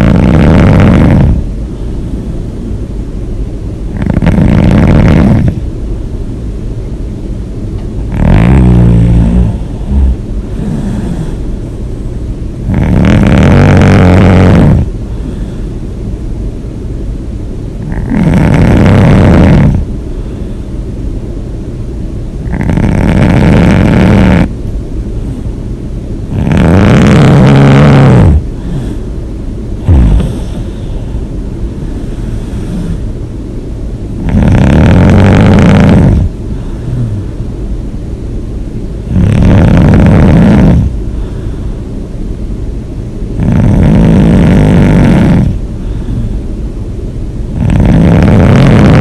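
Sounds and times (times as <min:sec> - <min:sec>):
person snoring: 0:00.0 - 0:01.4, 0:03.9 - 0:05.6, 0:08.1 - 0:11.5, 0:12.6 - 0:15.7, 0:17.8 - 0:19.9, 0:22.4 - 0:24.5, 0:26.3 - 0:29.1, 0:29.8 - 0:31.0, 0:34.2 - 0:37.4, 0:39.1 - 0:41.0, 0:43.4 - 0:46.4, 0:47.6 - 0:49.0
quiet breathing: 0:00.0 - 0:02.8, 0:07.8 - 0:16.3, 0:17.8 - 0:21.1, 0:22.5 - 0:33.3, 0:34.2 - 0:37.7, 0:39.0 - 0:42.2, 0:43.3 - 0:46.8
low breath sound: 0:15.0 - 0:16.0, 0:19.8 - 0:20.9, 0:28.4 - 0:33.2, 0:36.1 - 0:37.6, 0:40.8 - 0:42.0, 0:45.1 - 0:46.6.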